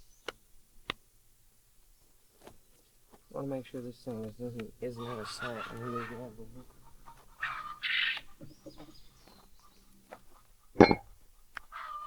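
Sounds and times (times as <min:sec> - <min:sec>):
chickens clucking: 0:03.3 - 0:12.0
sharp knock with short ring: 0:10.8 - 0:11.0.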